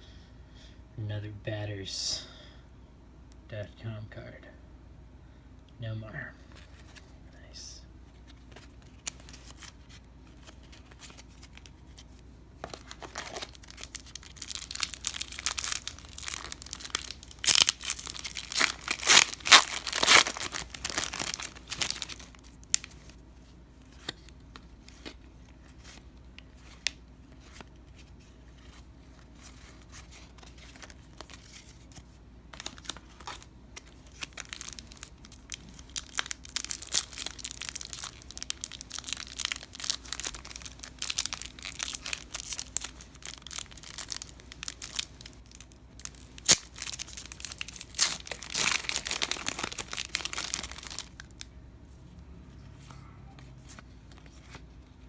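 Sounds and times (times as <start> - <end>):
foil wrapper tearing and crinkling: 12.7 - 23.0, 32.6 - 51.4.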